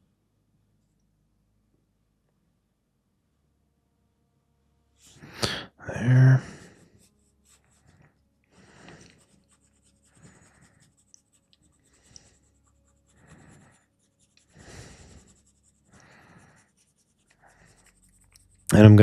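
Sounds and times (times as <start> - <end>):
pencil scratching on paper: 6.4 - 19.0.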